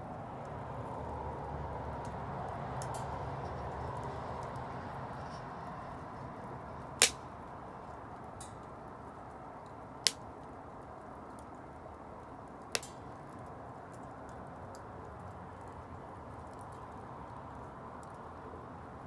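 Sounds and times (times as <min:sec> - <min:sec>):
wood fire crackling: 0:00.0 - 0:18.8
sharp pops of burning wood: 0:06.8 - 0:08.8, 0:09.6 - 0:10.4, 0:12.6 - 0:13.6.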